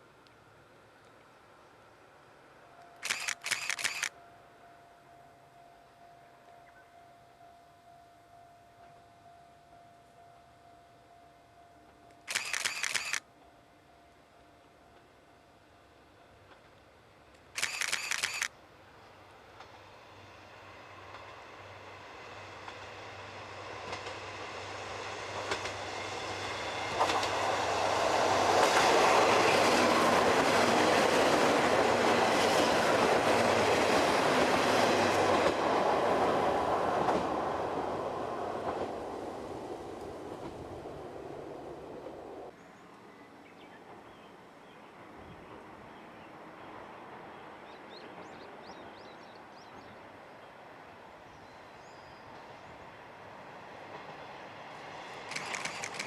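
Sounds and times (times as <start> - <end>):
diesel train engine hum: 0.0 - 56.0
train rumble: 14.2 - 42.6, 52.2 - 56.0
train wheels clicking over rail joints: 23.8 - 24.4, 25.3 - 36.0, 55.2 - 56.0.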